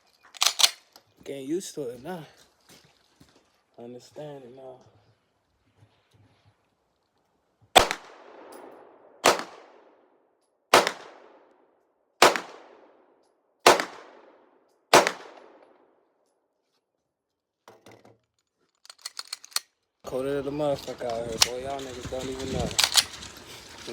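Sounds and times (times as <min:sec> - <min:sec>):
pistol shots with echo: 0:07.8 - 0:09.9, 0:10.7 - 0:11.4, 0:12.2 - 0:13.0, 0:13.6 - 0:15.7.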